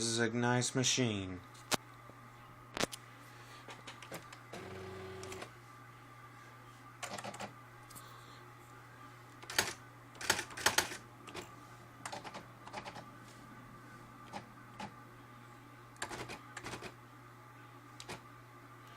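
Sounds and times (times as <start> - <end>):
low machine hum: 0.0 - 18.9
typewriter motor whir: 9.4 - 11.4
typewriter typing clicks: 9.4 - 11.4, 16.0 - 16.9.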